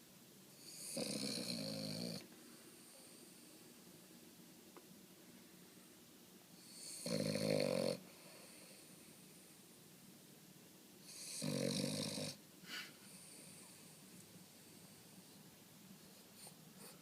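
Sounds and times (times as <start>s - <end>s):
dog snoring: 0.6s - 2.3s, 6.6s - 9.0s, 11.0s - 12.4s
dog snuffle: 16.0s - 17.0s.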